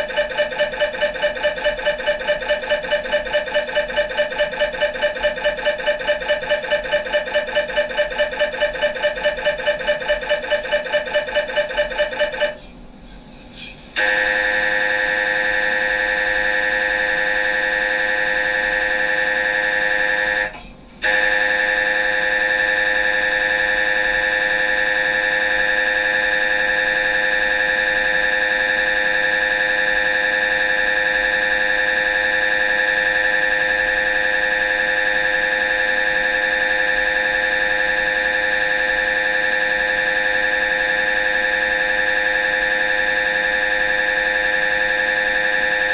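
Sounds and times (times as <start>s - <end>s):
mri scanner electronic buzz: 0.0s - 13.3s, 13.9s - 45.9s
mri scanner rapid pulses: 0.0s - 45.9s.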